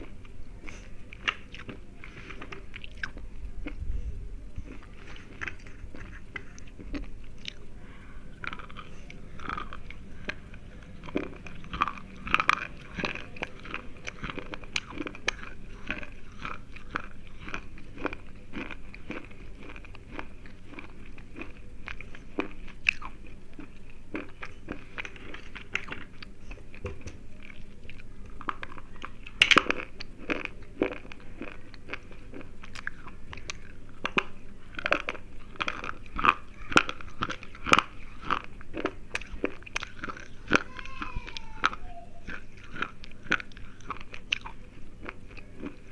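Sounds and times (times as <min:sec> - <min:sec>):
slate pencils crunching: 0:08.4 - 0:26.2.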